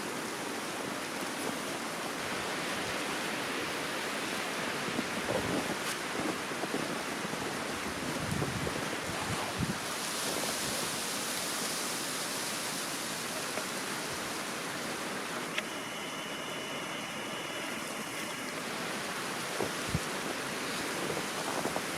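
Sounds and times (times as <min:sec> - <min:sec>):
faint high whine: 0:11.1 - 0:21.9
click: 0:15.5 - 0:15.7.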